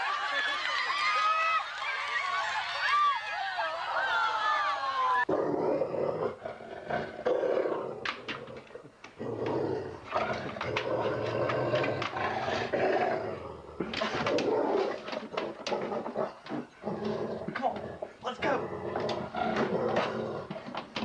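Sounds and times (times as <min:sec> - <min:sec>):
dog growling: 0:05.3 - 0:21.0.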